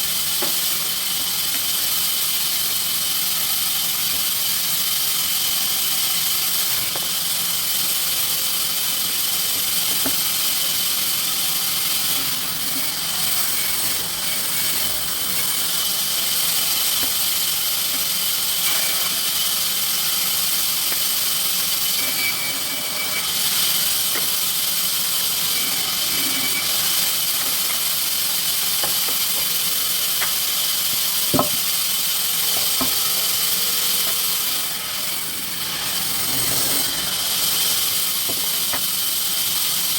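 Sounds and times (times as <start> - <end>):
sawmill machinery hissing and whining: 0.0 - 39.9.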